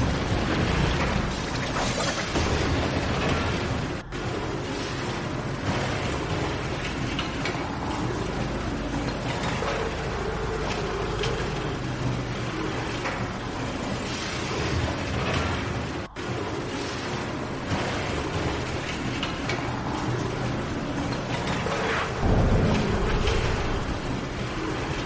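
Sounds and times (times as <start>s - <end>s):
rattling clattering noise: 0.0s - 25.0s
strong wind gusting: 20.7s - 25.0s.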